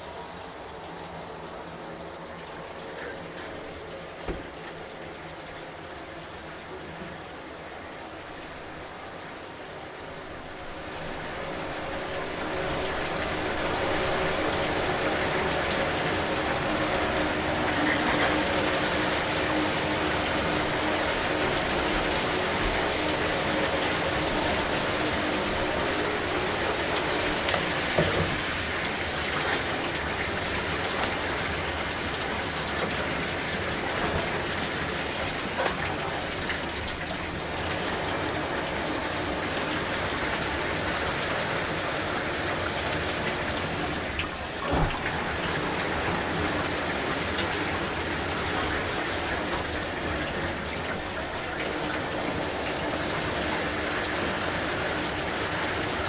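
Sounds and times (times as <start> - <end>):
shower water spraying: 10.8 - 40.6.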